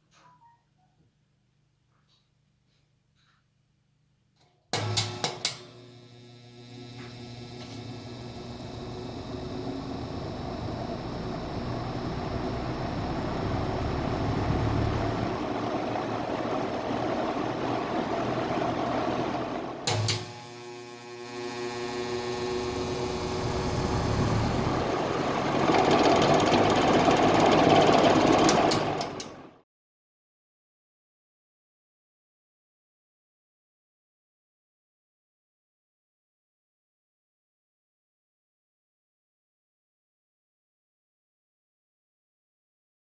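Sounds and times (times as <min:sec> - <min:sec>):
box fan running: 0:04.8 - 0:29.6
fan switch click: 0:19.9 - 0:20.4, 0:28.4 - 0:29.4.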